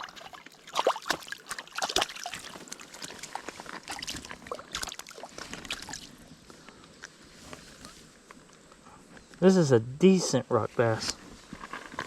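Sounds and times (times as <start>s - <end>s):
creek water splashing: 0.0s - 6.3s.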